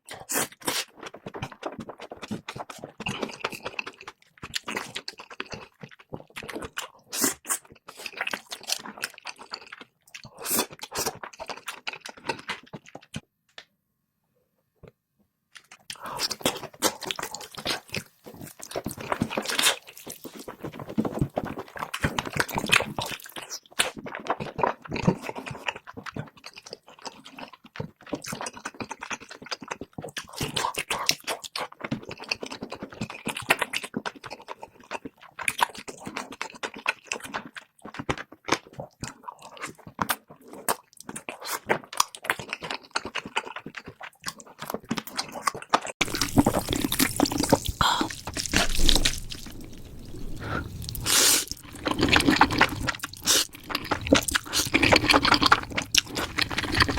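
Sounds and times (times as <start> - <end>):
crunching and wet chewing: 0.0 - 13.2, 15.5 - 56.9.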